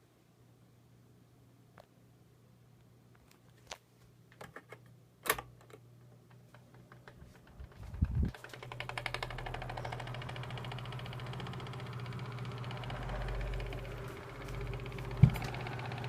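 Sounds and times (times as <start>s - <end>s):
fan motor humming: 6.8s - 16.0s
fast even ticking: 8.0s - 16.0s.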